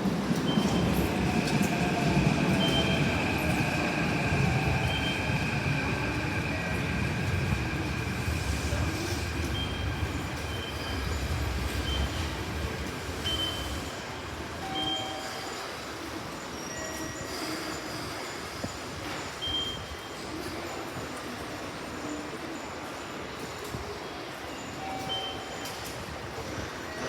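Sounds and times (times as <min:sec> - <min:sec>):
electric train rumbling and whining: 0:00.0 - 0:27.0.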